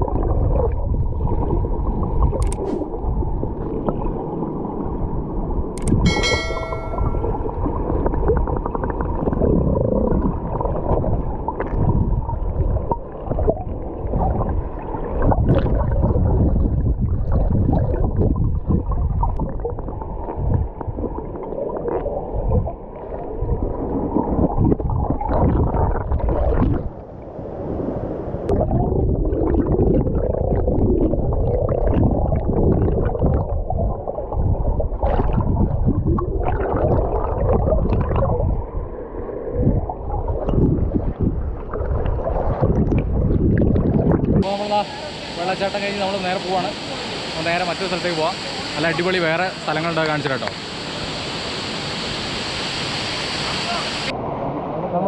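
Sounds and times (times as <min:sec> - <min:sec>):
waterfall rushing: 0:44.4 - 0:54.2.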